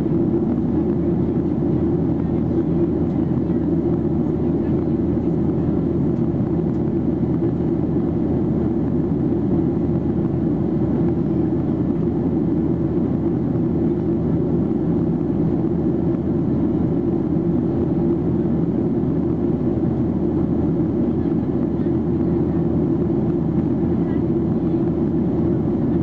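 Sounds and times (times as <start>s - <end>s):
airplane cabin roar: 0.0s - 26.0s.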